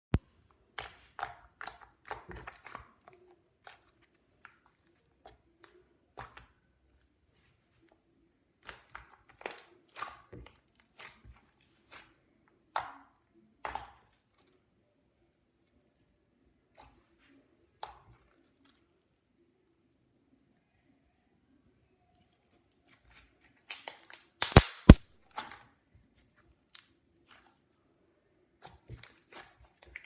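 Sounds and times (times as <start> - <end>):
slime squishing by hand: 0.7 - 7.8, 8.4 - 14.6, 22.9 - 25.0, 28.6 - 30.0.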